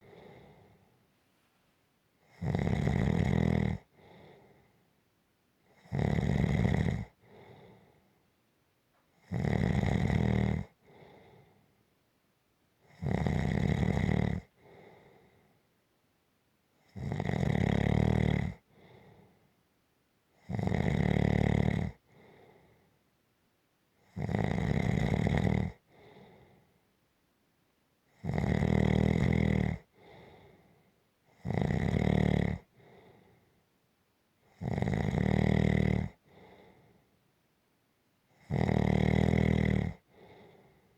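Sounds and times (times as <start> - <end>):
person snoring: 2.3 - 4.5, 5.8 - 7.8, 9.3 - 11.3, 12.9 - 14.8, 16.9 - 18.6, 20.4 - 22.3, 24.1 - 26.3, 28.2 - 30.5, 31.4 - 33.1, 34.6 - 36.7, 38.4 - 40.6.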